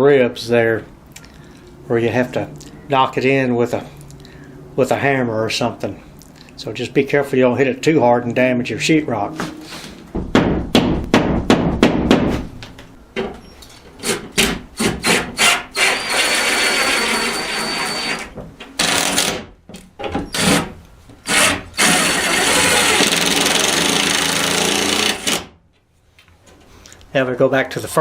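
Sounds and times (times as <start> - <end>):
hammer tapping wall anchors: 10.3 - 12.4
power drill running: 14.8 - 19.4, 21.3 - 25.5.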